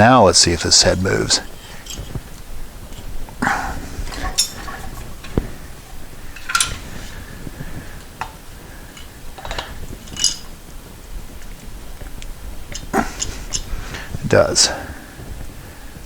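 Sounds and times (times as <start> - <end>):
metallic clinks and knocks on engine: 4.0 - 6.9.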